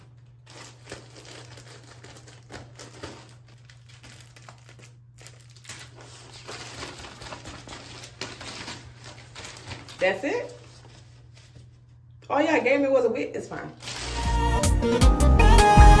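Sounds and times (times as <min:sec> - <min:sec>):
plastic packaging crinkling: 0:00.0 - 0:12.0, 0:13.8 - 0:14.5.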